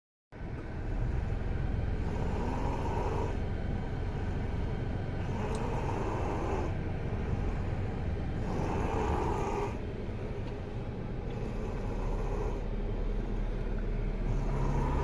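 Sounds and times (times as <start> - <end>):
steady low rumble: 0.4 - 15.0
man snoring: 2.0 - 3.4, 5.2 - 7.6, 8.4 - 9.8, 11.3 - 12.7, 14.2 - 15.0.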